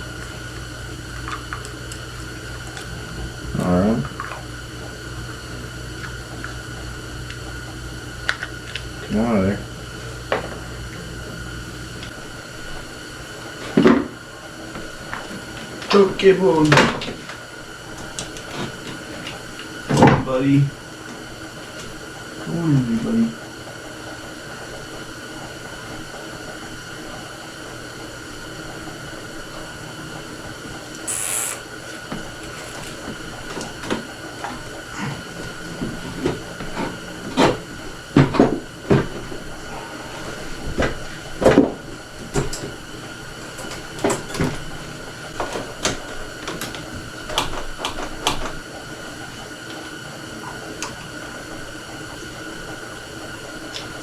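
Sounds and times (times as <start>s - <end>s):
steady hum: 0.0s - 54.0s
short hiss: 31.1s - 31.7s.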